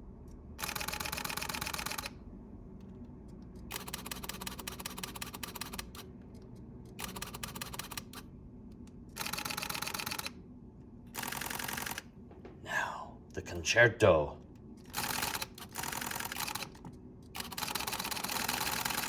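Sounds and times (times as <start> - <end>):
camera shutter burst clicks: 0.6 - 2.2, 3.7 - 6.1, 7.0 - 8.3, 9.2 - 10.4, 11.1 - 12.1, 14.8 - 19.0.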